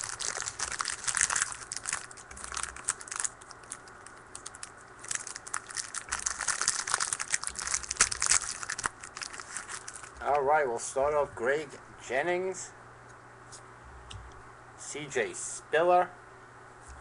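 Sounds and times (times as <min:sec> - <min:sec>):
card wrappers crinkling: 0:00.0 - 0:10.3.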